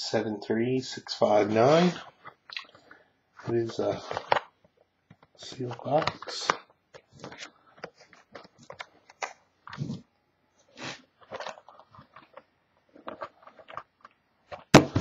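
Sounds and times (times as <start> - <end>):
plastic and cardboard wrapping crinkling: 3.4 - 10.0, 10.6 - 15.0.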